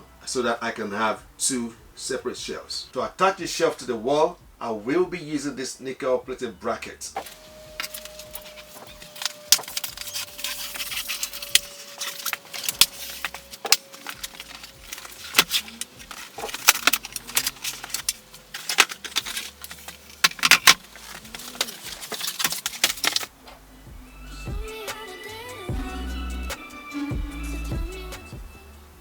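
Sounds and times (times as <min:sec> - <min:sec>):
metal rubbing: 0:07.1 - 0:28.4
metal shelf brackets clinking: 0:07.2 - 0:23.6.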